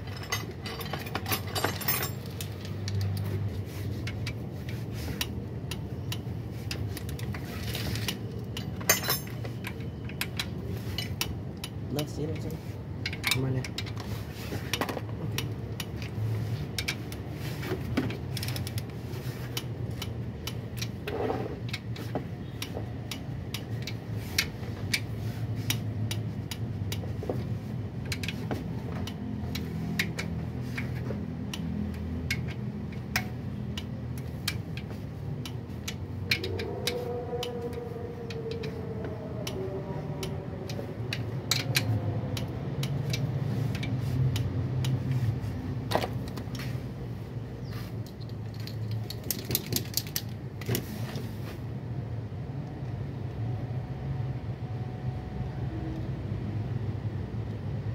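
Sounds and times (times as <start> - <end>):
metal hand tools clinking: 0.0 - 3.2, 8.6 - 9.5.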